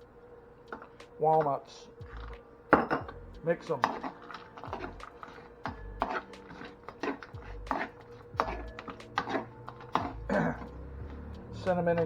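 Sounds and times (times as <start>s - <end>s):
spoon scraping a bowl: 2.1s - 11.2s.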